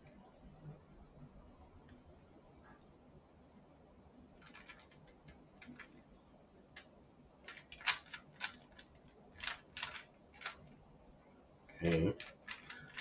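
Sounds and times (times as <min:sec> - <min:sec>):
puzzle cube clicking and rattling: 0:04.4 - 0:06.0, 0:06.8 - 0:10.8, 0:11.8 - 0:13.0.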